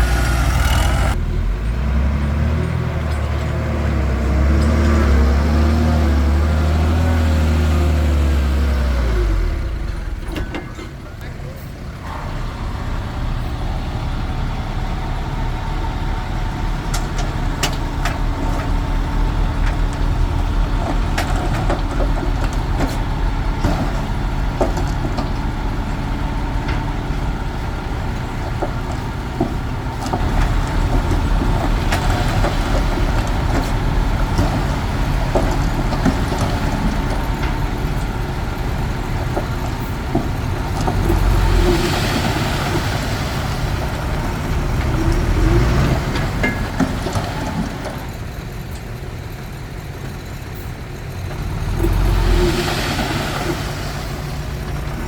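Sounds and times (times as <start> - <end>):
bulldozer diesel engine: 0.0 - 55.0
sharp clanks and knocks: 10.0 - 11.4, 16.9 - 49.0.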